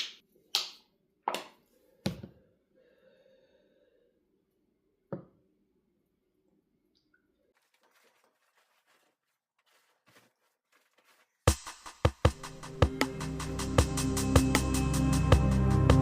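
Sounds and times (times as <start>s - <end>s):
rustling and handling noises: 7.5s - 12.0s
music with heavy drum beat: 11.5s - 16.0s.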